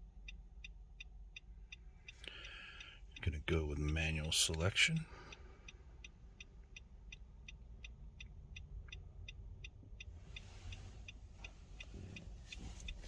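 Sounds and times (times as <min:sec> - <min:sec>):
high-pitched electronic ticks: 0:00.0 - 0:13.0
low car cabin rumble: 0:03.0 - 0:13.0.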